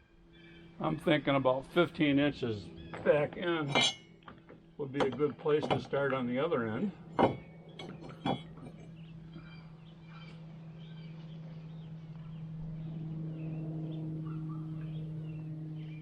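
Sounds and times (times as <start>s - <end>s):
birds chirping: 0.0s - 16.0s
low motor hum: 0.0s - 16.0s
knocks of lumber being handled: 3.0s - 6.2s, 7.1s - 8.8s.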